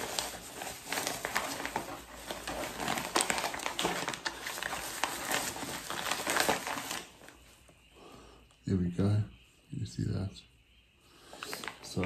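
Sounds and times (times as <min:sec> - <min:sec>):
packaging rustling and crinkling: 0:00.0 - 0:07.8, 0:11.3 - 0:12.0.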